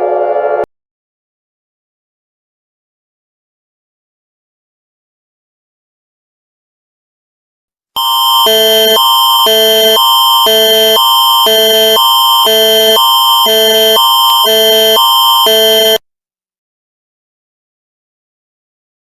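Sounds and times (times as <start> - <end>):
electronic alarm tone: 8.0 - 16.0.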